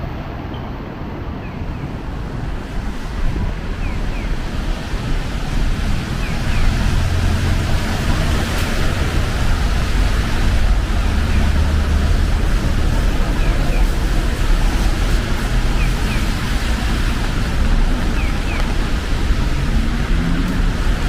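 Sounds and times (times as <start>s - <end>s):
traffic on wet street: 0.0s - 21.0s
rain hissing: 1.8s - 21.0s.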